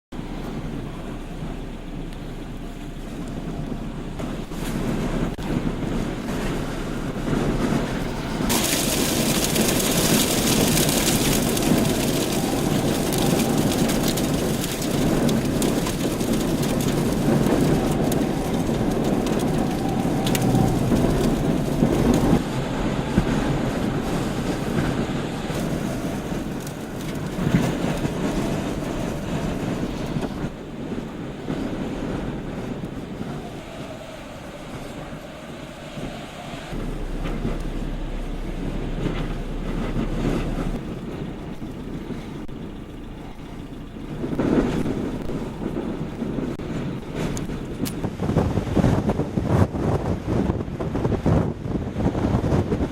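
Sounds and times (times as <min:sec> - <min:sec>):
strong wind on microphone: 0:00.2 - 0:52.9.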